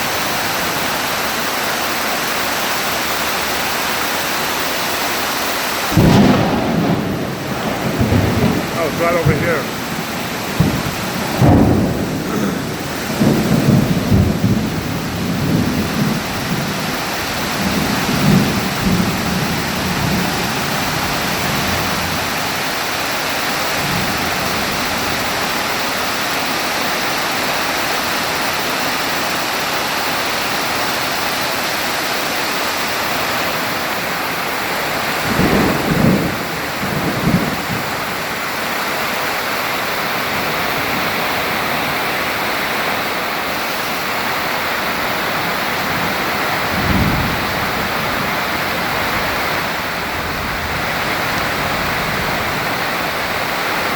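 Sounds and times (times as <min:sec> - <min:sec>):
heavy rain: 0:00.0 - 0:53.9
rolling thunder: 0:05.8 - 0:26.4, 0:34.0 - 0:38.6, 0:44.0 - 0:53.9.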